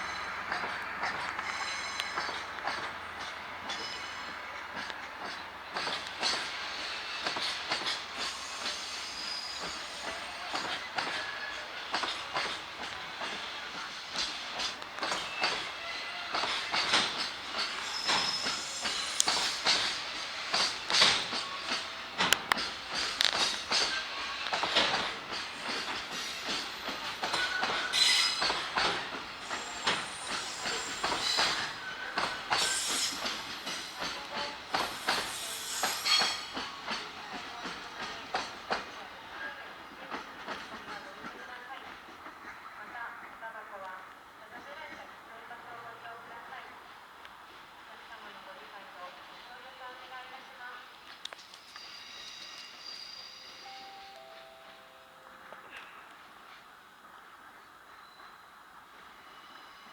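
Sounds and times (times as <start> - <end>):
train wheels clacking over rail joints: 0.0 - 42.8
wheel squeal: 8.2 - 10.3, 17.6 - 20.0, 29.4 - 34.1.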